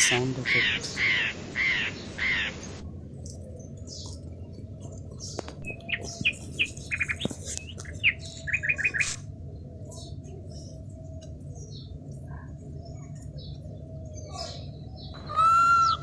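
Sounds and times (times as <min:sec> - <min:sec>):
crow cawing: 0:00.0 - 0:02.8, 0:15.2 - 0:16.0
small birds chirping: 0:00.0 - 0:16.0
steady low background noise: 0:00.0 - 0:16.0.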